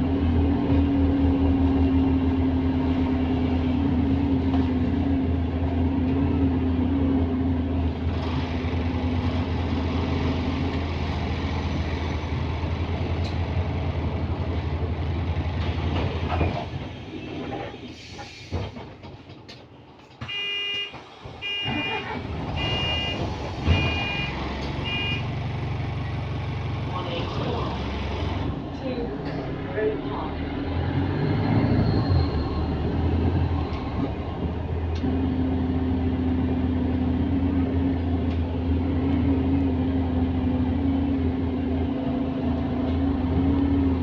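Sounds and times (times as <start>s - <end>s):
bus engine droning: 0.0s - 44.0s
short electronic beeps: 22.6s - 25.2s.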